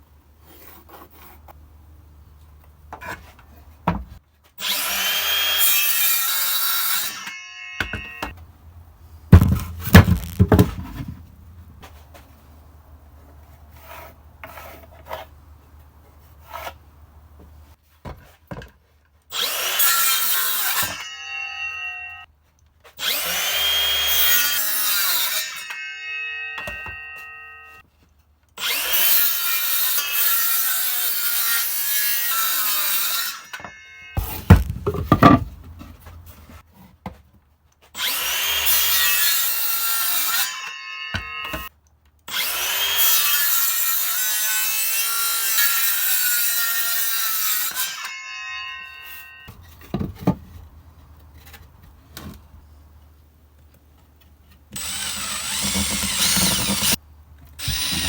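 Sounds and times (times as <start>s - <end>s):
saw cutting wood: 4.6s - 8.4s, 9.4s - 11.9s, 19.3s - 22.3s, 23.0s - 27.8s, 28.6s - 36.6s, 38.0s - 41.7s, 42.3s - 50.7s, 54.7s - 57.0s, 57.6s - 58.0s
knocks of wood being handled: 9.3s - 12.0s, 34.2s - 37.2s.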